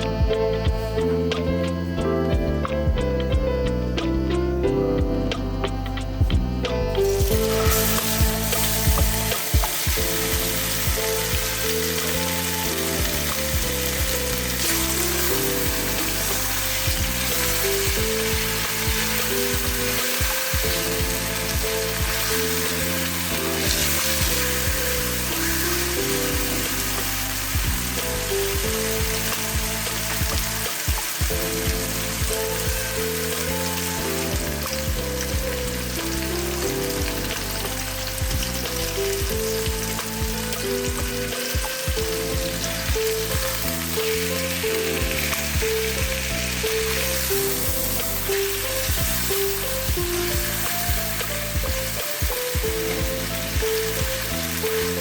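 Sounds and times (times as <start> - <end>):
background music: 0.0 - 55.0
meat sizzling in a pan: 5.9 - 55.0.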